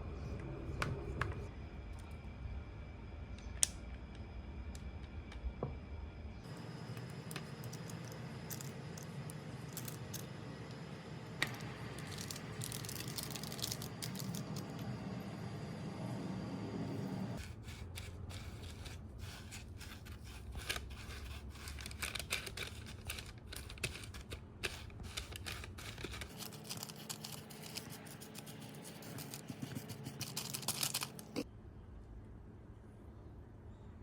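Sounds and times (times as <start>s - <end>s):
chocolate crackling and crunching: 7.0s - 10.3s, 11.5s - 14.8s, 17.4s - 31.5s.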